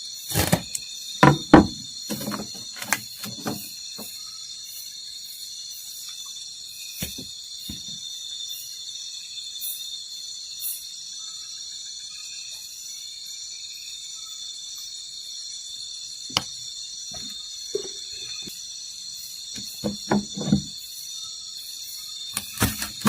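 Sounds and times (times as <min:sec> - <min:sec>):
night insects trilling: 0:00.0 - 0:23.0
sharp knocks: 0:01.2 - 0:03.6, 0:19.6 - 0:20.7.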